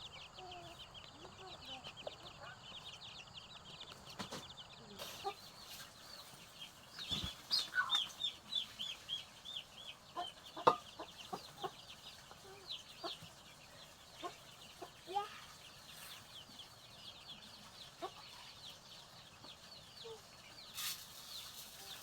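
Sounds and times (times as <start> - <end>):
chicks peeping: 0.0 - 22.0
lower bird calls: 7.0 - 8.5.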